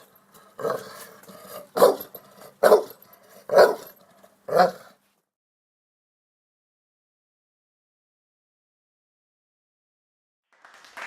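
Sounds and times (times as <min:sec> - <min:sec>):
dog barking: 0:00.0 - 0:05.0.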